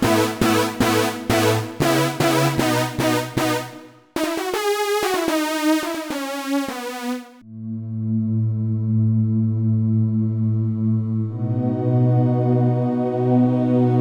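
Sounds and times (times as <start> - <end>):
bright synthesizer run: 0.0 - 7.4
synthesizer repeated notes: 0.0 - 7.4.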